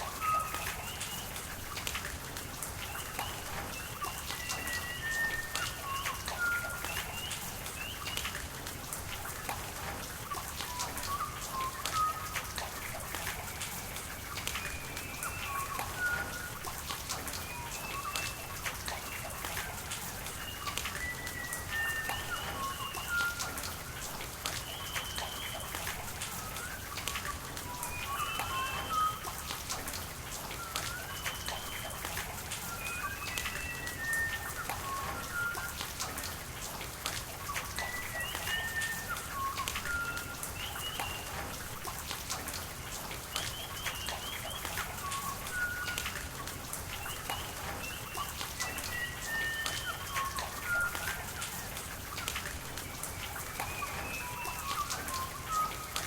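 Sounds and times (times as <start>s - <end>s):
songbird singing: 0.0s - 1.8s, 10.3s - 29.5s, 37.4s - 41.4s, 42.8s - 46.2s, 46.9s - 56.0s
raindrops hitting: 0.0s - 56.0s
running water: 0.0s - 56.0s
steady rain: 0.0s - 56.0s.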